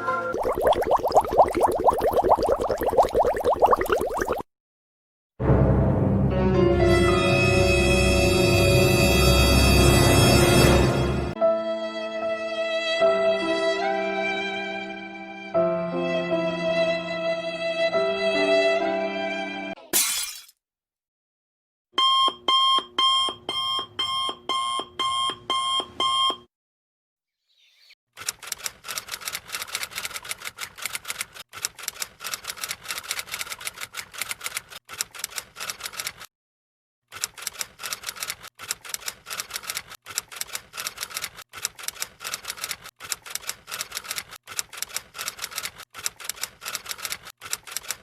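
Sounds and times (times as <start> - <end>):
typewriter keys clicking: 28.4 - 36.2, 37.1 - 48.0.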